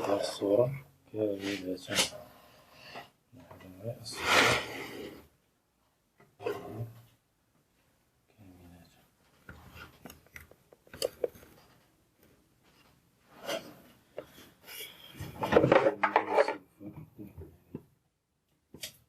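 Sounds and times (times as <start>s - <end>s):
objects rubbing and scraping: 3.9s - 5.4s, 6.3s - 7.2s, 9.4s - 16.7s
clatter of objects: 15.2s - 16.6s.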